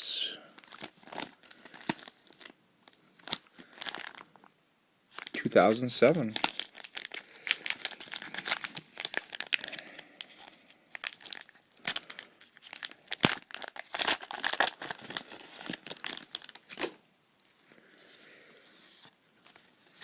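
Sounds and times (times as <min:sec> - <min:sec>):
wrapper tearing and crinkling: 0:00.6 - 0:04.5, 0:05.1 - 0:17.0.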